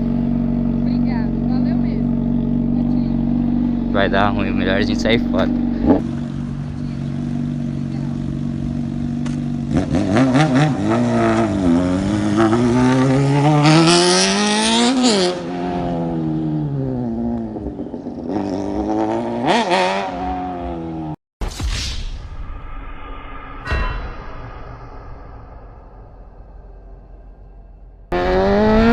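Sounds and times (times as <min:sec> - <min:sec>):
motorcycle engine revving: 0:00.0 - 0:21.2, 0:27.9 - 0:28.9.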